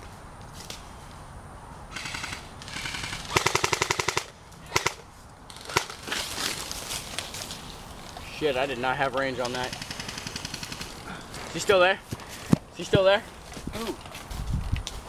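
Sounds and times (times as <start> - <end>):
airsoft guns firing: 1.9 - 6.6, 9.3 - 11.7.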